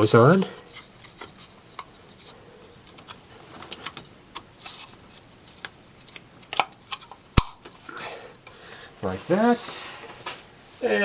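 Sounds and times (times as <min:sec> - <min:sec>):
small parts clicking and scraping: 0:00.5 - 0:08.6.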